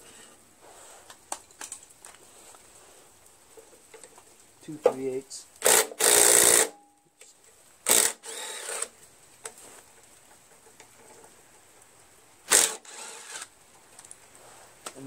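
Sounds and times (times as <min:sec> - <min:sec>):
power tool spinning off bolts: 0:05.6 - 0:06.7, 0:07.8 - 0:08.9, 0:12.4 - 0:13.5.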